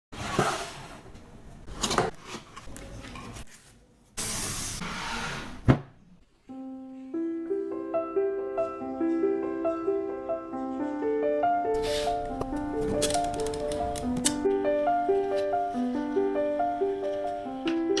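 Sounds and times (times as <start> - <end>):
piano music: 6.5 - 18.0
rustling and handling noises: 11.8 - 14.4.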